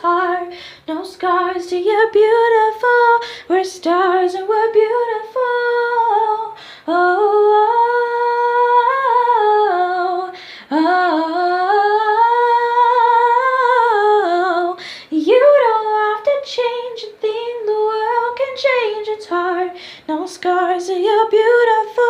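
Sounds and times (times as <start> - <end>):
woman singing a cappella: 0.0 - 22.0
singer breathing: 0.5 - 0.9, 3.2 - 3.5, 6.6 - 6.9, 10.3 - 10.7, 14.8 - 15.1, 19.7 - 20.1.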